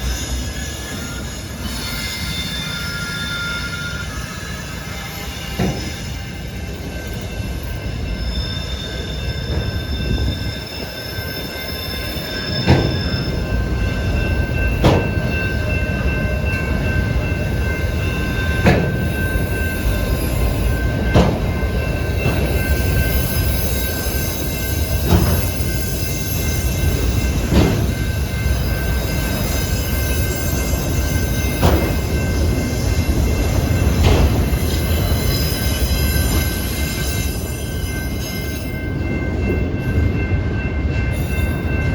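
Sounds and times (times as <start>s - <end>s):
wheel squeal: 0.0s - 13.9s
train cars rumbling past: 0.0s - 41.9s
wheels clacking over rail joint: 5.5s - 6.2s, 12.6s - 13.4s, 14.7s - 16.6s, 18.6s - 19.4s, 20.6s - 28.5s, 30.8s - 36.6s.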